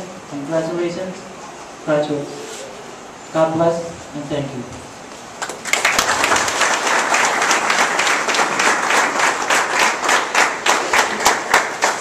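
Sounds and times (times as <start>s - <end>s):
audience applauding: 5.4s - 12.0s.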